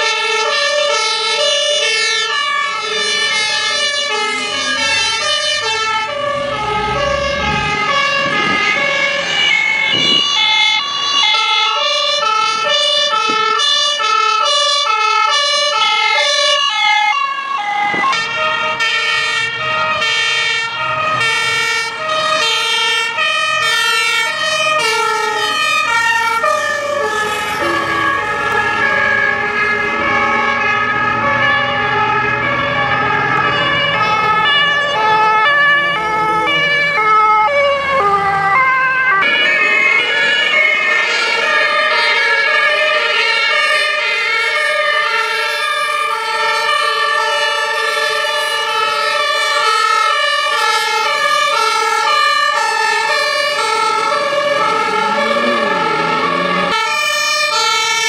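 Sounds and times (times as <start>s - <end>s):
fire engine two-tone siren: 0.0s - 58.0s
low vehicle rumble: 2.3s - 13.5s, 16.7s - 43.3s, 48.6s - 58.0s.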